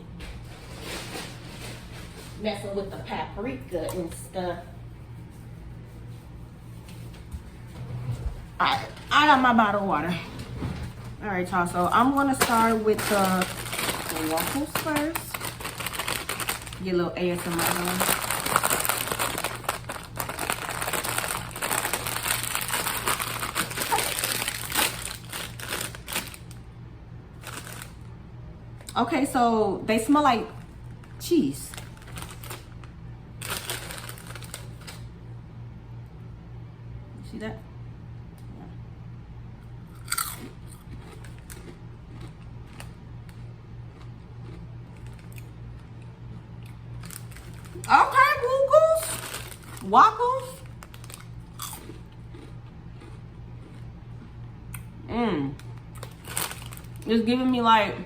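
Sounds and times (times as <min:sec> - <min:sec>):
plastic snack bag crinkling: 0:12.0 - 0:26.6, 0:27.4 - 0:28.1, 0:30.6 - 0:35.1, 0:44.0 - 0:46.0, 0:47.0 - 0:53.8, 0:55.7 - 0:57.1
crunchy chip bite: 0:39.9 - 0:45.6, 0:50.7 - 0:53.9
chewing crunching: 0:39.9 - 0:47.9, 0:50.6 - 0:54.9, 0:55.6 - 0:57.1.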